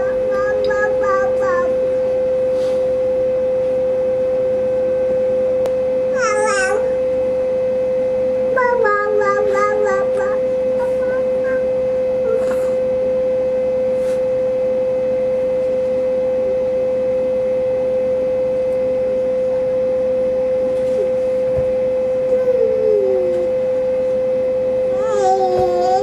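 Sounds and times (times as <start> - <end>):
baby sounds: 0.0 - 1.8, 6.1 - 7.0, 8.6 - 11.7, 22.3 - 23.6, 24.9 - 26.0
loud steady tone: 0.0 - 26.0.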